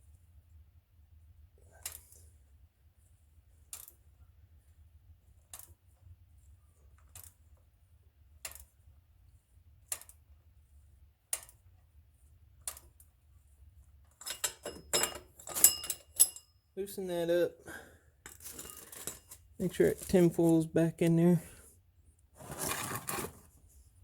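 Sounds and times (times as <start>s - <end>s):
metallic clinks: 14.2s - 16.6s.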